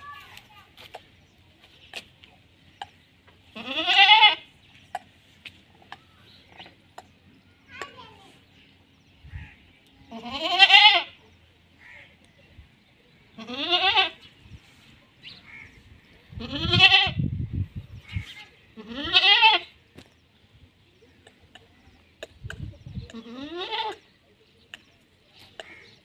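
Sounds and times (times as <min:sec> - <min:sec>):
goat bleating: 0:03.5 - 0:04.6, 0:10.1 - 0:11.2, 0:13.4 - 0:14.2, 0:16.4 - 0:17.2, 0:18.2 - 0:19.7, 0:23.1 - 0:24.0.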